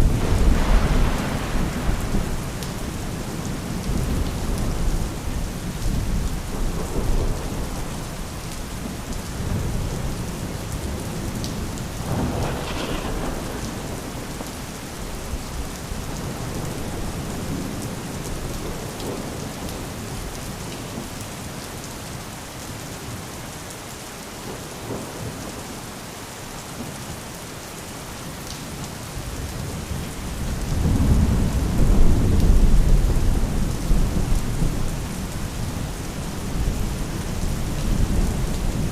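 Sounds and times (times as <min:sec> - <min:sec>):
thunder rumbling: 0:00.0 - 0:19.4, 0:30.3 - 0:38.9
steady rain falling: 0:00.0 - 0:38.9.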